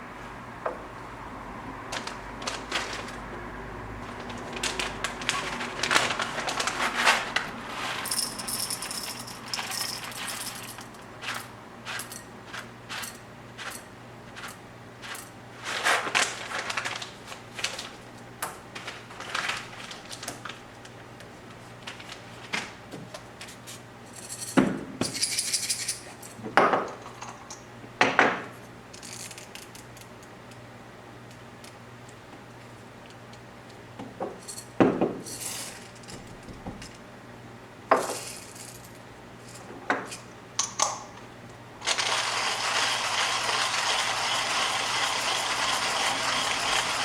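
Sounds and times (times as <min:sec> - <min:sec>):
kitchen items clinking and rattling: 0:04.0 - 0:15.3.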